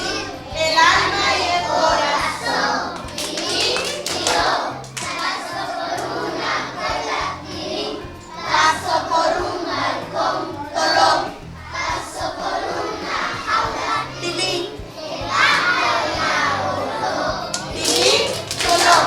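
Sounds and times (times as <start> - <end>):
backing music: 0.0 - 19.0
children singing: 0.0 - 19.0
hand claps: 2.9 - 6.3, 17.5 - 19.0.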